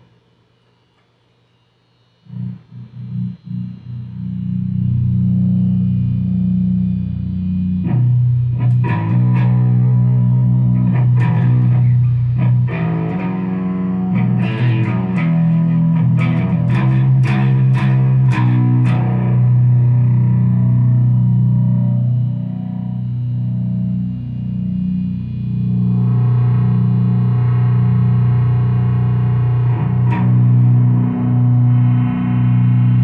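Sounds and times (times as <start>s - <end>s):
sustained low music notes: 2.3s - 33.0s.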